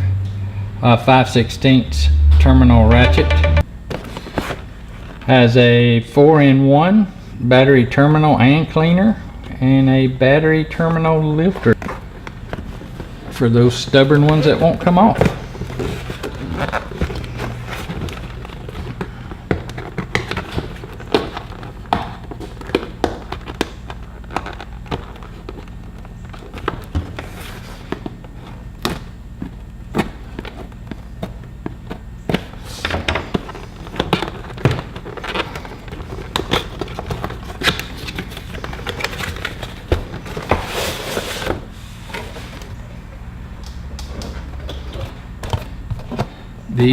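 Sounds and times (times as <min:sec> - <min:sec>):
low steady hum: 0:00.0 - 0:04.0.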